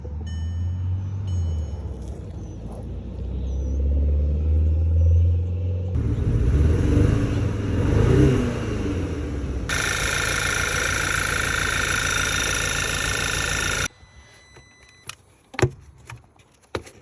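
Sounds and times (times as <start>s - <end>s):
car engine misfiring: 9.7s - 13.9s.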